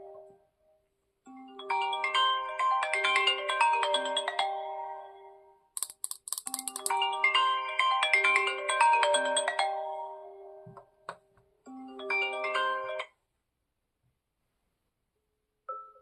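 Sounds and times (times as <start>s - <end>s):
bell-like ringtone melody: 1.3s - 5.4s, 6.5s - 10.6s, 11.7s - 13.1s
high ticking: 5.8s - 7.0s.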